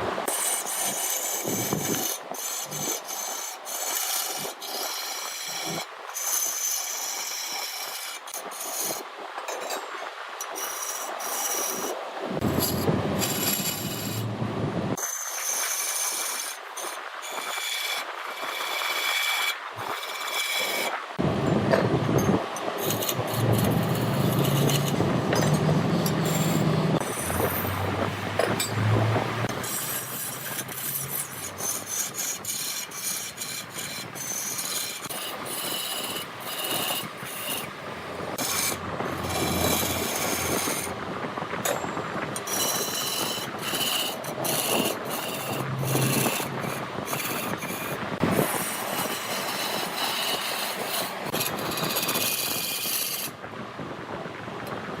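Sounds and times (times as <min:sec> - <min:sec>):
lathe tool rasping on wood: 0:00.0 - 0:09.0, 0:10.4 - 0:14.4, 0:22.4 - 0:41.0, 0:42.4 - 0:53.4
low motor hum: 0:12.4 - 0:15.0, 0:21.2 - 0:31.9, 0:44.5 - 0:47.3.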